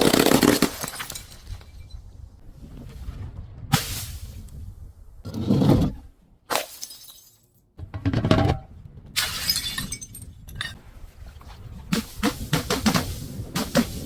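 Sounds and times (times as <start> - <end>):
glass bottles shattering: 0.5 - 2.0, 6.5 - 7.6, 9.2 - 10.8.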